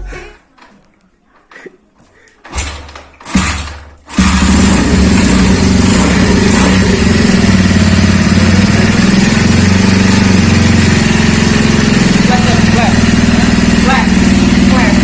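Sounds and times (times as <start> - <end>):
motorcycle engine running: 3.3 - 15.0.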